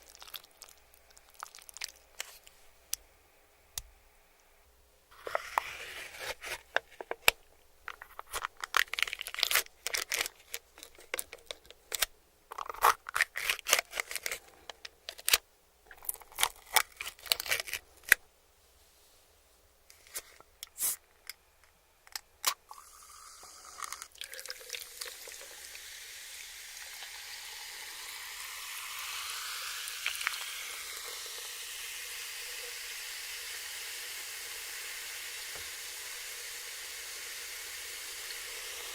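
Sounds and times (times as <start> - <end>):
crunching of fried chicken: 0.0 - 2.2, 16.0 - 17.9
wrappers crackling: 8.1 - 12.0
steady hiss: 18.4 - 22.0, 22.7 - 38.9.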